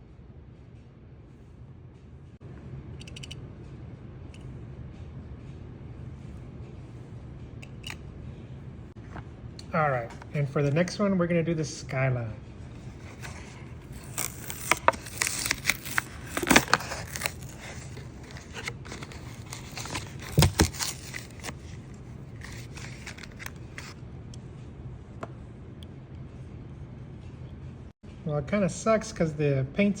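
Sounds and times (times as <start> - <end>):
plastic crackling: 12.9 - 21.8
blister pack cut and torn: 13.0 - 21.7, 22.4 - 24.0.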